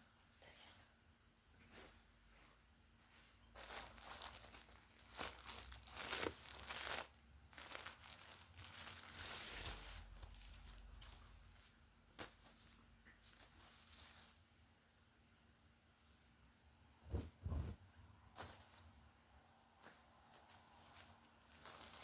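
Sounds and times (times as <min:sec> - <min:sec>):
packaging crinkling and tearing: 0:03.6 - 0:11.4, 0:21.5 - 0:22.0.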